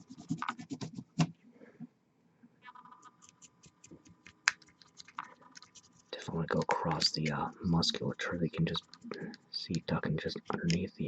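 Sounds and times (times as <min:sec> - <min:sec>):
rapid sharp clicks and ticks: 0:03.2 - 0:11.0.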